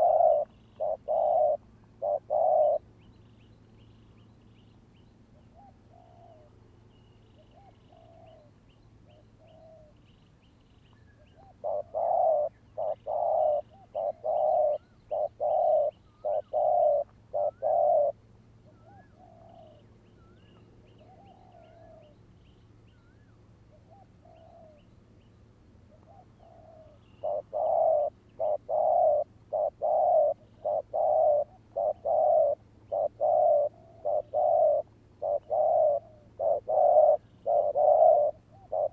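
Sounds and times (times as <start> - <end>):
dove cooing loudly: 0.0 - 2.9, 11.4 - 19.8, 26.0 - 38.9
distant dove cooing softly: 0.0 - 3.2, 5.3 - 10.1, 10.8 - 38.9
small birds chirping: 0.0 - 18.1.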